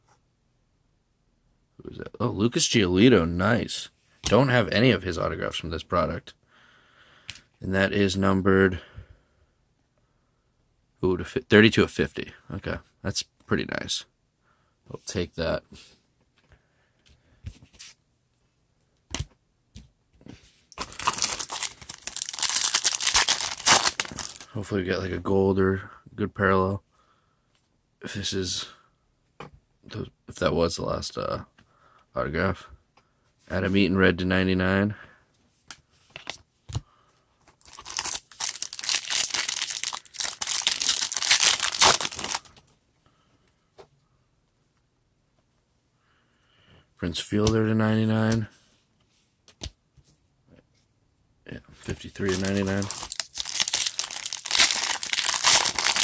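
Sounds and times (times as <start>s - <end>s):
card wrapper crinkling and tearing: 20.8s - 24.6s, 37.6s - 42.5s, 51.9s - 56.0s.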